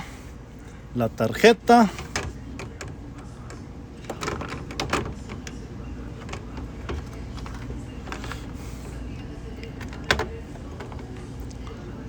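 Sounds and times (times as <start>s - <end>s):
light clicks and knocks: 1.9s - 11.8s.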